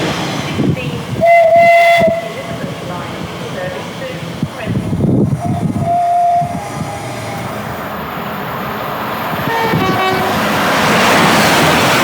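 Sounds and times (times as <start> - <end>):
train passing at speed: 0.0 - 12.0
train horn: 1.2 - 2.4, 5.4 - 7.5, 9.4 - 10.5.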